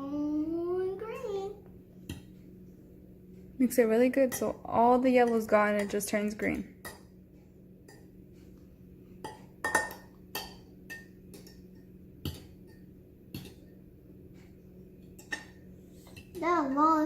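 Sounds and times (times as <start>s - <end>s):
utensil clinking against bowl: 4.3s - 6.2s, 9.2s - 13.7s.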